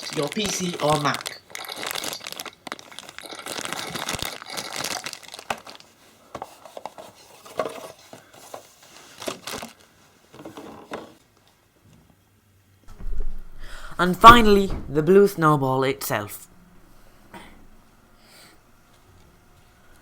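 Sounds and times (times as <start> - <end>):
packaging crinkling and rustling: 0.0 - 11.2.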